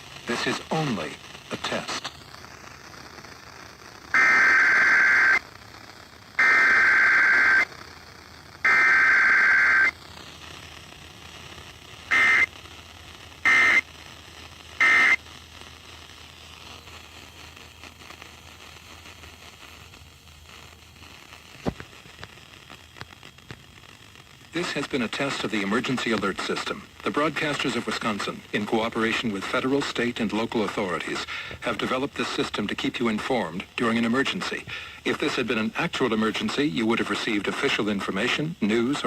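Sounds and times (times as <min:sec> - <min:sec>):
buzzy two-tone data bursts: 0:00.0 - 0:10.7, 0:12.0 - 0:12.6, 0:13.4 - 0:14.0, 0:14.7 - 0:15.3.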